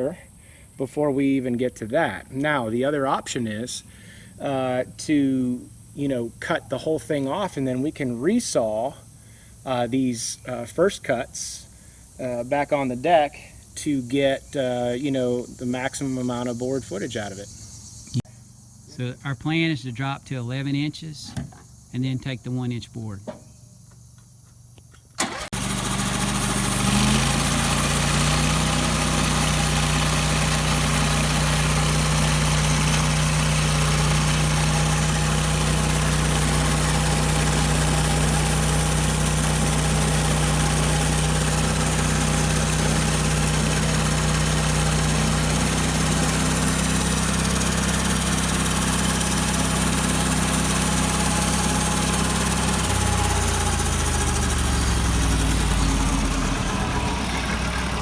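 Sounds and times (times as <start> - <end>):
petrol engine starting and running: 25.2 - 58.0.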